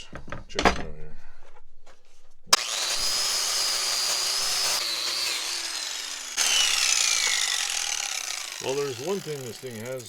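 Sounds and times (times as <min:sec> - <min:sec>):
wire-brush grinder whining: 0:02.6 - 0:10.0.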